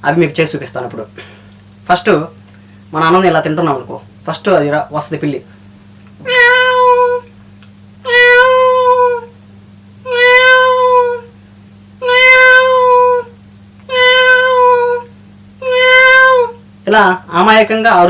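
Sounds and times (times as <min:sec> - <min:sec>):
man mimicking cat meows: 0:06.2 - 0:07.3, 0:08.0 - 0:09.4, 0:10.0 - 0:11.3, 0:12.0 - 0:17.2.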